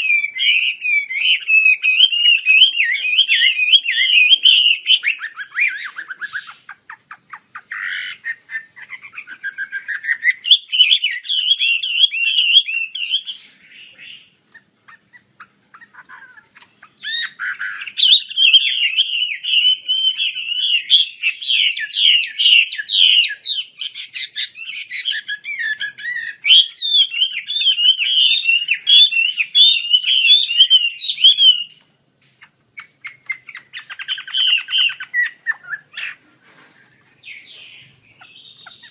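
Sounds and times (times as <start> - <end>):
bird warbling song: 0.0 - 38.9.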